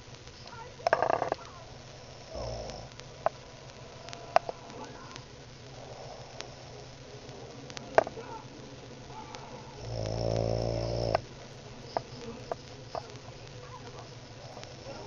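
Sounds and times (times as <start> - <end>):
quiet breathing: 0.0 - 15.0
man snoring: 2.3 - 2.9, 9.8 - 11.2.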